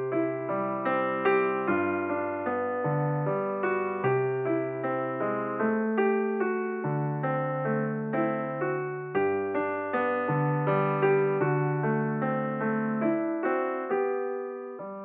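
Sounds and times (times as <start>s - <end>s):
slow solo piano piece: 0.0s - 15.0s.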